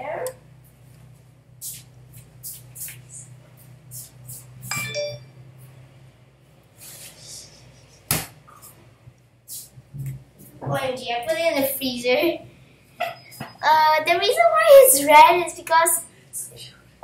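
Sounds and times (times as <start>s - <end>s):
ringing clink: 4.7s - 5.3s.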